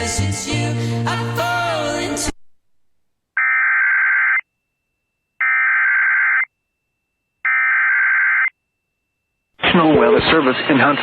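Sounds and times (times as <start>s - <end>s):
buzzy digital data tones: 5.4s - 6.5s, 7.4s - 8.5s.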